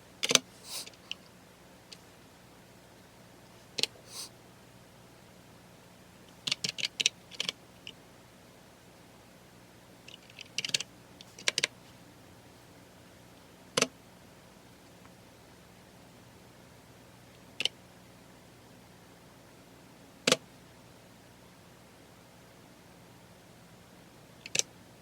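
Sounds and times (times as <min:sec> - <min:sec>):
keyboard typing: 0:00.2 - 0:00.8, 0:06.4 - 0:07.6, 0:10.1 - 0:11.7.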